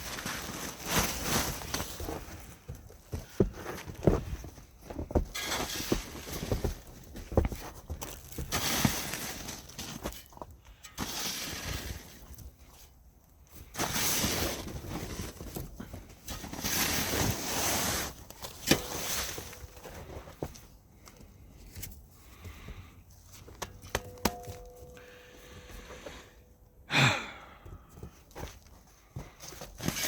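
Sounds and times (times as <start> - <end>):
tent fabric rustling and scraping: 0.0 - 2.7, 13.7 - 20.8.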